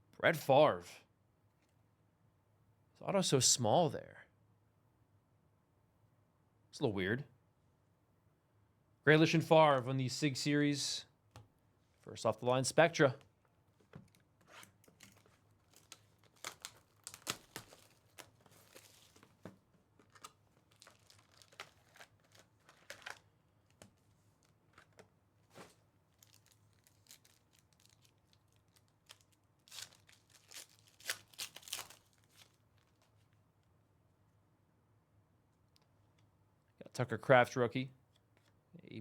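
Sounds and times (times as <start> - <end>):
packaging wrapper crinkling: 14.1 - 33.2.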